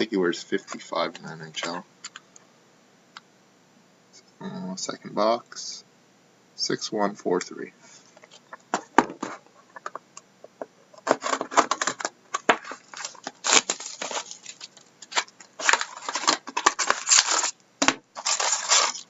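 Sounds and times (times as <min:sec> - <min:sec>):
plastic wrapping crinkling: 0:11.0 - 0:19.0.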